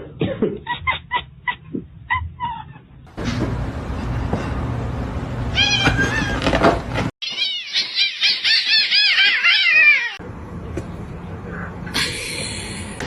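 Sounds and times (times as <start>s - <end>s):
cat meowing: 5.5s - 6.5s, 7.2s - 10.2s.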